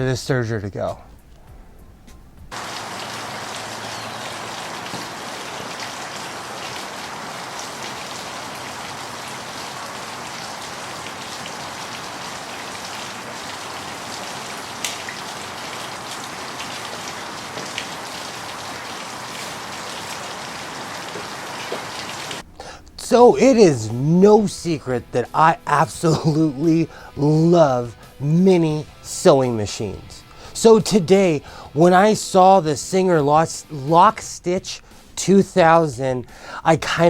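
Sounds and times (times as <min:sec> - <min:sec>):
rain drop ticks: 0:01.2 - 0:23.1
rain falling on a surface: 0:02.5 - 0:22.4.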